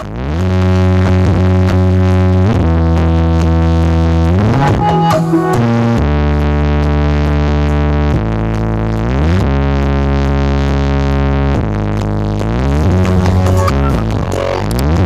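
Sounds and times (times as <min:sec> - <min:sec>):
bass-heavy synthesizer music: 0:00.0 - 0:15.0
high synth blips: 0:04.4 - 0:06.0, 0:12.8 - 0:15.0.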